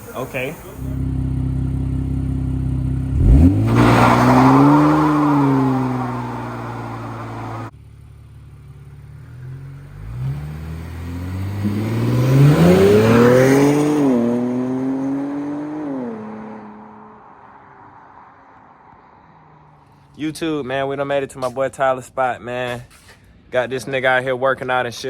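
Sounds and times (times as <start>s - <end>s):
car engine accelerating: 0.0s - 17.7s.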